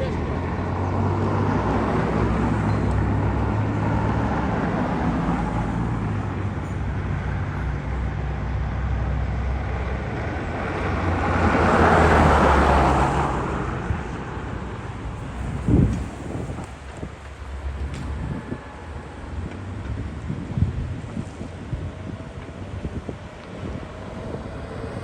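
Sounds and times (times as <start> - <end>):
fire truck engine droning: 0.0 - 25.0
vehicle passing close by: 8.6 - 25.0.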